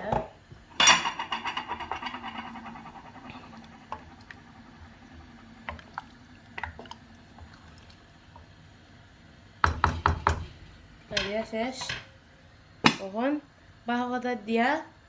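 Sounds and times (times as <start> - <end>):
faint steady hum: 0.0 - 15.0
curry bubbling in a pan: 1.8 - 10.8.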